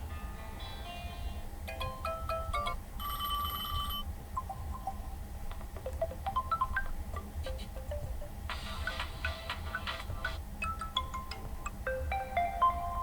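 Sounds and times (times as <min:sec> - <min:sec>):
electronic ringtone melody: 0:01.7 - 0:05.1, 0:05.9 - 0:13.0.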